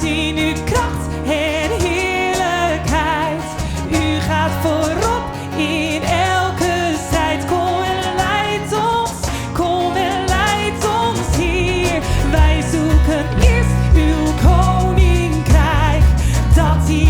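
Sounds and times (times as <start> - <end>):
person singing long notes: 0.0 - 17.0
band playing sustained chords: 10.7 - 17.0.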